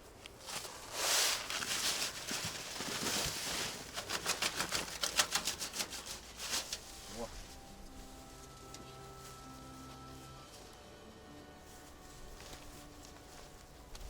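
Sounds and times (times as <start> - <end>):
rustling: 0.0 - 14.0
crisp clicks and rattles: 1.6 - 6.8.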